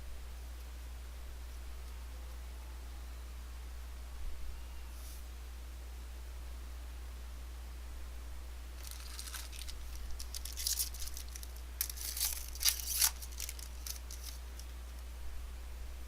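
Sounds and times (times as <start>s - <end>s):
foil wrapper tearing and crinkling: 8.8s - 14.7s.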